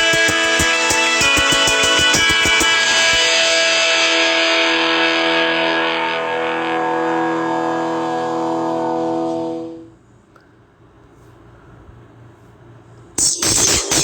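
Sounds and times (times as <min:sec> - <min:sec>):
distorted guitar ringtone music: 0:00.0 - 0:09.8.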